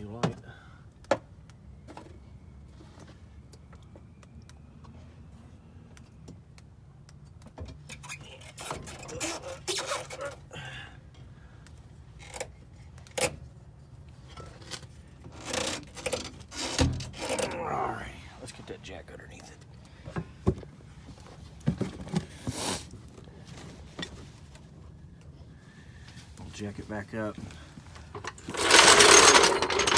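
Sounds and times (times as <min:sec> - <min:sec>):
metal tools clinking and scraping: 0:15.4 - 0:17.6, 0:27.9 - 0:29.9
clattering and rustling: 0:20.5 - 0:24.7, 0:27.6 - 0:29.9.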